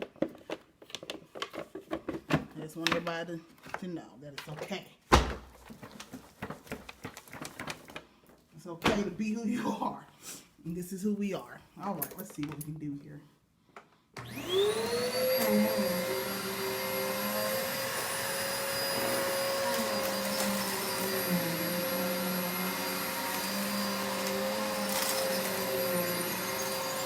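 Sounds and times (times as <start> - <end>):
vacuum cleaner motor whining: 14.2 - 27.0.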